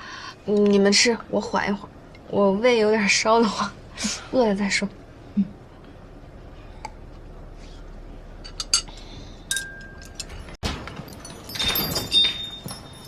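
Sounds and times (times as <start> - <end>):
tableware clinking: 9.5 - 13.0.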